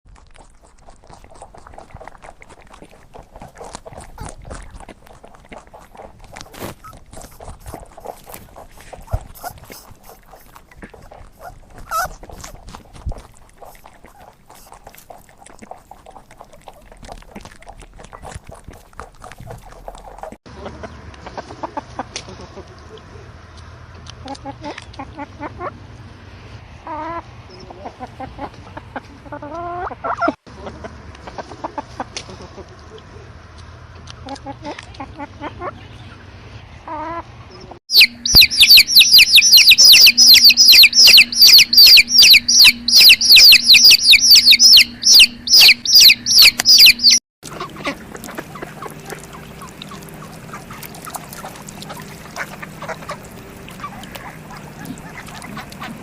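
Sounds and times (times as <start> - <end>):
dog making short noises: 0.9 - 20.4
chicken clucking: 1.0 - 22.7, 36.9 - 56.0
chicken drawn-out call: 5.6 - 12.6, 37.9 - 56.0.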